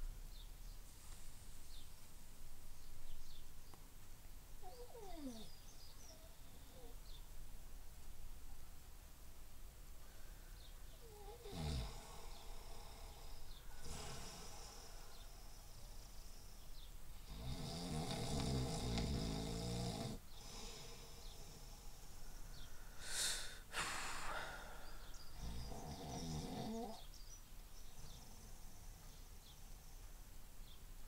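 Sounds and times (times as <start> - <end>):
man snoring: 11.0 - 13.2, 13.8 - 14.9, 17.2 - 21.6, 25.4 - 27.0
hissing breath: 20.4 - 25.4.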